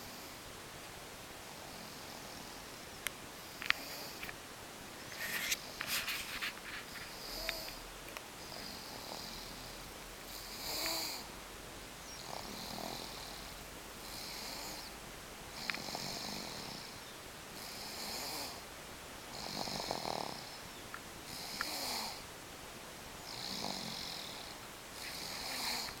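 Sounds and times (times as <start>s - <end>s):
rasping snoring: 8.5s - 11.3s, 12.2s - 13.5s, 14.1s - 14.9s, 15.6s - 17.0s, 17.6s - 18.6s, 19.3s - 20.6s, 21.3s - 22.2s, 23.3s - 26.0s.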